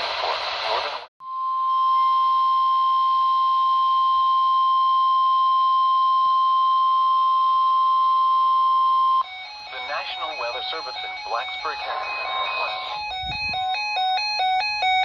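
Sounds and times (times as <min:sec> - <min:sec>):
light radio static: 0:00.0 - 0:01.1, 0:09.7 - 0:13.1
steady alarm tone: 0:01.2 - 0:15.0.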